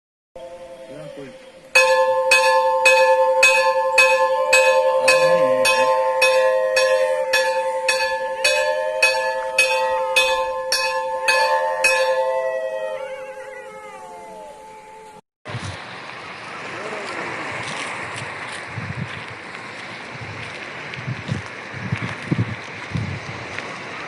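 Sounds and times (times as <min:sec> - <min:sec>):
metal bell struck repeatedly: 0:00.4 - 0:14.1.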